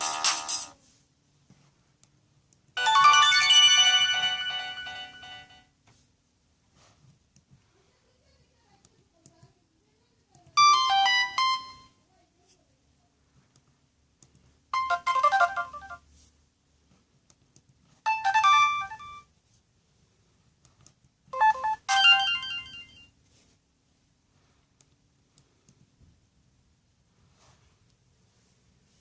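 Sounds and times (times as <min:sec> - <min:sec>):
phone ringtone: 0:02.8 - 0:05.7, 0:10.6 - 0:12.0, 0:14.7 - 0:16.1, 0:18.1 - 0:19.3, 0:21.4 - 0:23.1.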